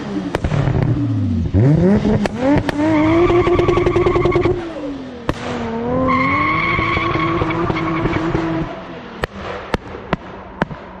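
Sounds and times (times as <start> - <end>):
high turbo whine: 0.0 - 10.9
car engine at steady revs: 0.0 - 11.0
sharp exhaust pops: 0.3 - 4.6.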